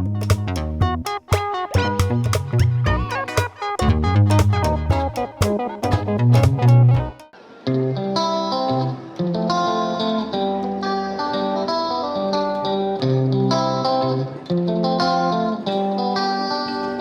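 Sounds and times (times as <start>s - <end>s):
plucked instrumental melody: 0.0s - 7.4s.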